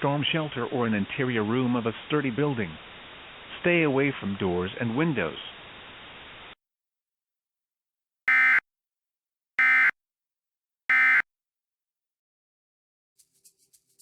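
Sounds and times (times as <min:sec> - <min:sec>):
digital data screech bursts: 0:08.3 - 0:08.6, 0:09.6 - 0:09.9, 0:10.9 - 0:11.2.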